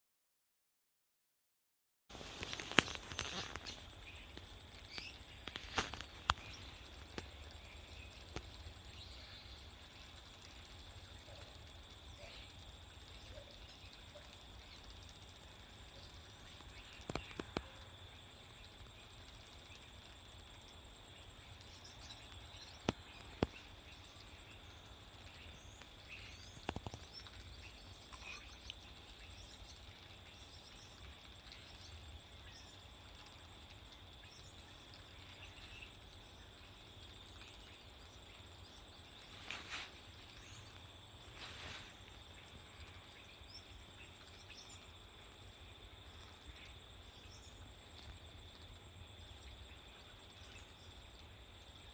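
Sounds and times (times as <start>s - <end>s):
insect drone: 2.1s - 51.9s
faint bird chirps: 2.4s - 20.2s, 21.1s - 33.4s.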